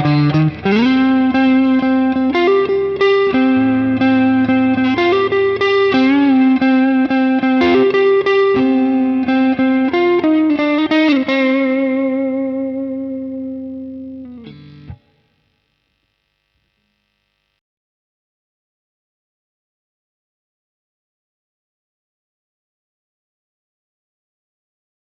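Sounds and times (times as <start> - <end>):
overdriven electric guitar notes: 0.0 - 17.6.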